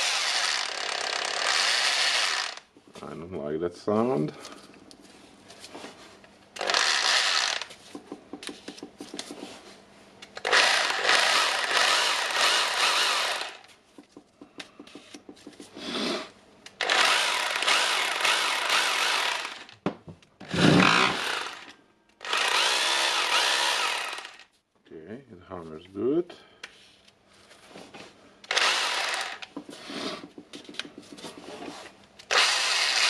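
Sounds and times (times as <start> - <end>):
rotary hammer running: 20.4 - 24.4.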